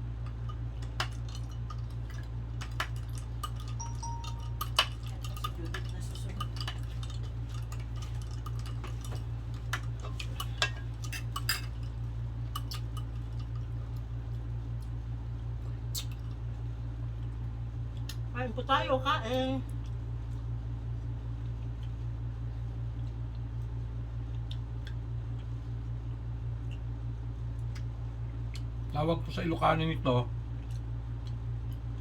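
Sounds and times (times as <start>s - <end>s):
tableware clinking: 3.8s - 5.9s.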